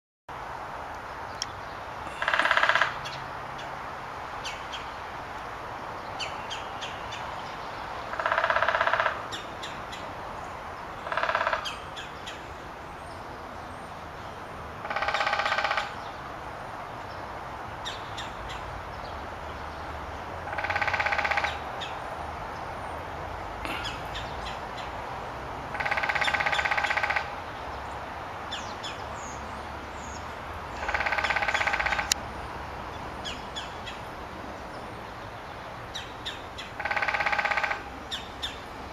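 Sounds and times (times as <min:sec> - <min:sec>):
woodpecker drumming bursts: 0:02.1 - 0:03.0, 0:08.1 - 0:09.2, 0:11.0 - 0:11.7, 0:20.5 - 0:21.6, 0:25.7 - 0:27.3, 0:30.8 - 0:32.2, 0:36.8 - 0:37.9.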